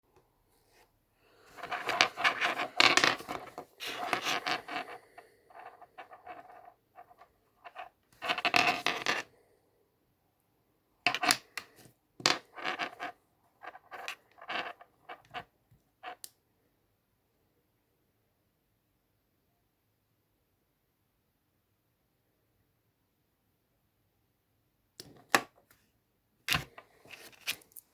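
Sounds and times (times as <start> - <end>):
handling scraping and rubbing: 0.6 - 9.3, 11.1 - 15.4, 26.5 - 27.9.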